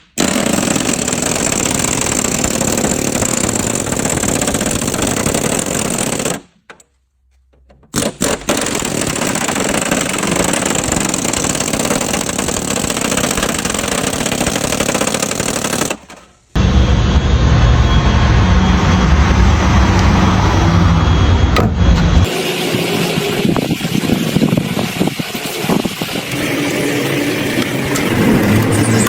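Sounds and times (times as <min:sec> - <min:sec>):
power tool rattling: 0:00.2 - 0:06.8, 0:07.8 - 0:16.4, 0:23.4 - 0:29.0.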